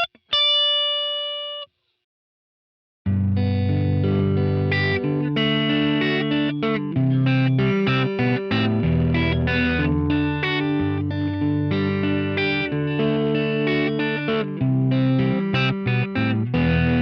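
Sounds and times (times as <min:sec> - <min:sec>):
overdriven electric guitar: 0:03.1 - 0:17.0.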